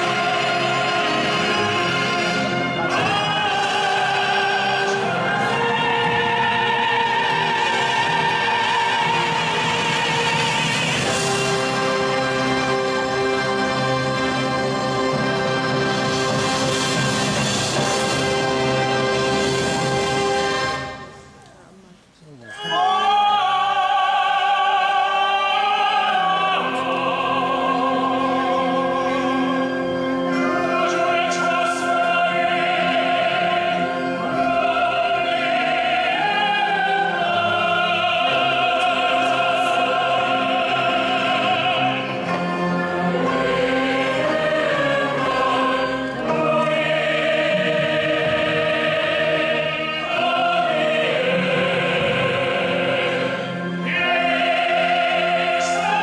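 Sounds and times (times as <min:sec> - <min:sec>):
choir singing: 0:00.0 - 0:21.3, 0:22.5 - 0:56.0
military band playing: 0:00.0 - 0:21.4, 0:26.6 - 0:56.0
operatic singer: 0:00.0 - 0:56.0.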